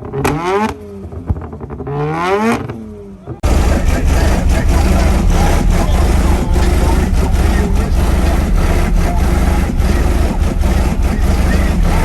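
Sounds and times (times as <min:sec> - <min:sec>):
car engine revving: 0:00.0 - 0:12.0
loud low rumble: 0:03.4 - 0:12.0.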